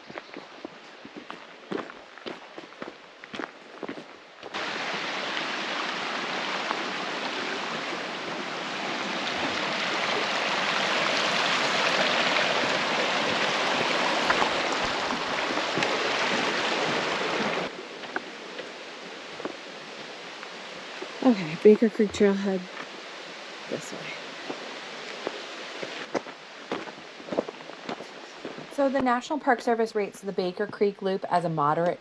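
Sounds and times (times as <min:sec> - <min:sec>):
creek rushing over rocks: 0:04.4 - 0:29.0.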